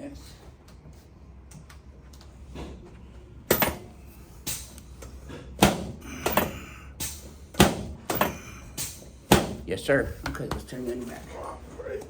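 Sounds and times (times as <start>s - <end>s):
knocks and thuds on a table: 9.3s - 9.6s.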